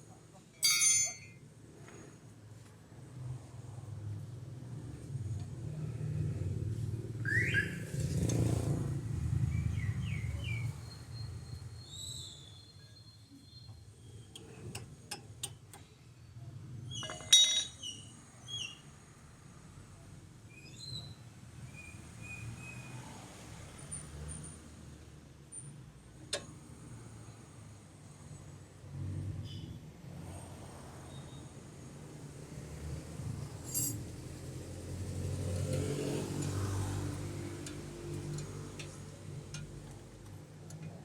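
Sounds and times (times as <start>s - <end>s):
loud metallic clink: 0.6s - 1.4s, 17.0s - 17.8s, 33.7s - 34.0s.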